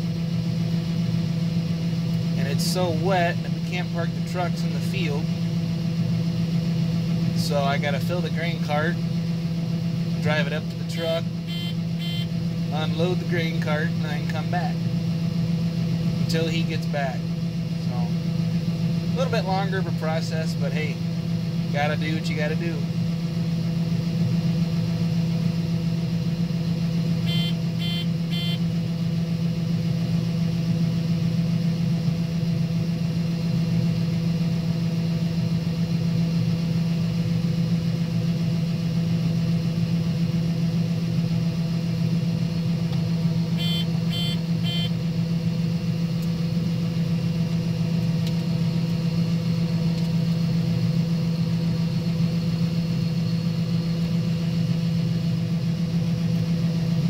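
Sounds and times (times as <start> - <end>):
diesel engine droning: 0.0 - 57.0
short high electronic beeps: 11.5 - 12.3, 27.3 - 28.6, 43.6 - 44.9.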